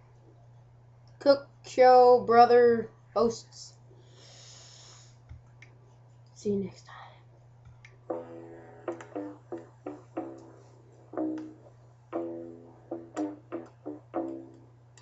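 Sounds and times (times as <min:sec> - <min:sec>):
steady low hum: 0:00.0 - 0:15.0
plucked string music: 0:08.1 - 0:14.8.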